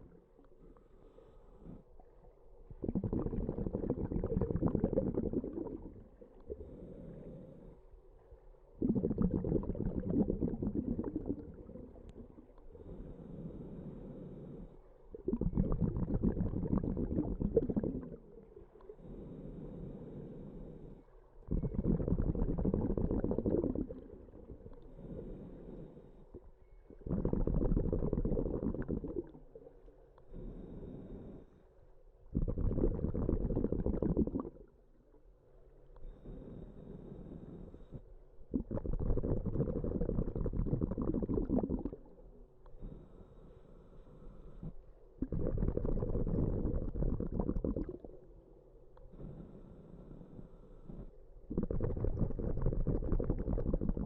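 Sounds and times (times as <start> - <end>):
regulator inhale: 0.6 - 1.9, 5.2 - 7.9, 10.5 - 15.0, 16.8 - 27.4, 30.2 - 31.9, 36.0 - 38.2, 42.6 - 47.9, 49.0 - 53.1
bubbling regulator exhalations: 2.7 - 7.8, 8.7 - 13.6, 15.0 - 20.0, 21.4 - 25.4, 26.2 - 31.3, 32.2 - 34.8, 37.8 - 42.3, 44.6 - 48.4, 50.9 - 54.0.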